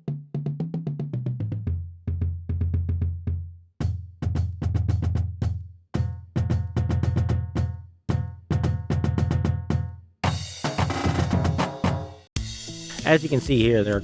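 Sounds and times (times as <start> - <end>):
drum kit fast beat: 3.8 - 14.0.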